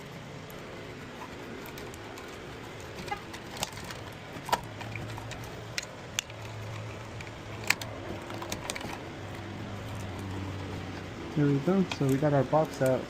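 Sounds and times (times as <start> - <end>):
low steady hum: 0.0 - 13.0
plastic box clicking and snapping: 1.6 - 10.3.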